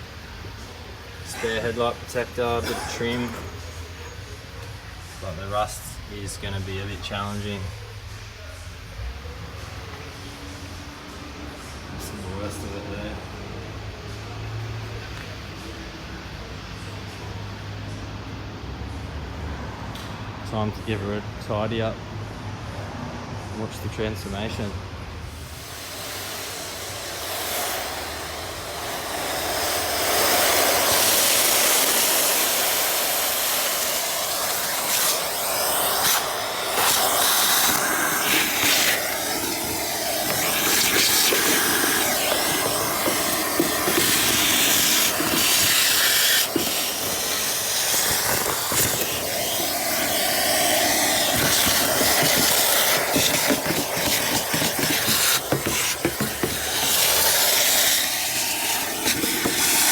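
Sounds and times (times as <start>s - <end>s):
cleaning spray hissing: 0.0s - 4.3s, 25.3s - 59.9s.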